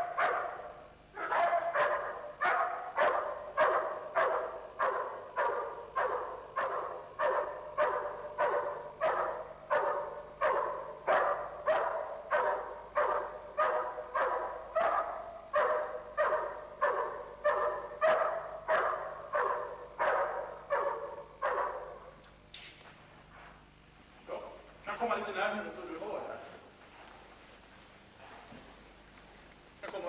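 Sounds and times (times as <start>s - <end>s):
dog barking: 0.0s - 22.2s.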